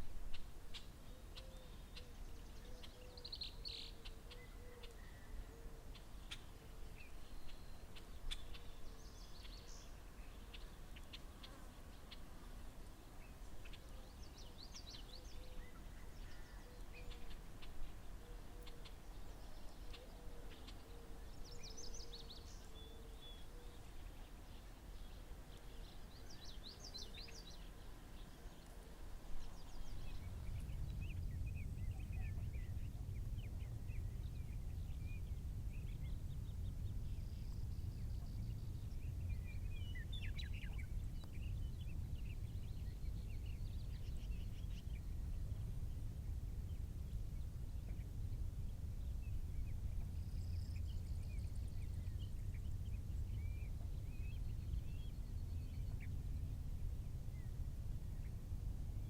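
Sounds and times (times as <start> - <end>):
small birds chirping: 0.0 - 59.0
low rumble: 29.4 - 59.0.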